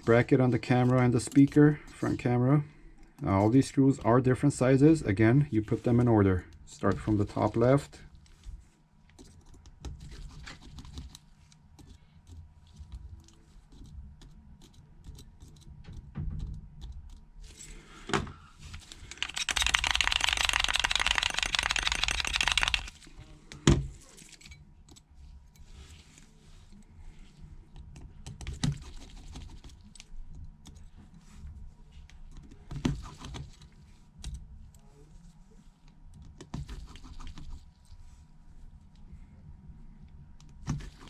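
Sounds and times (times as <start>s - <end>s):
rapid clicking: 19.1s - 22.9s.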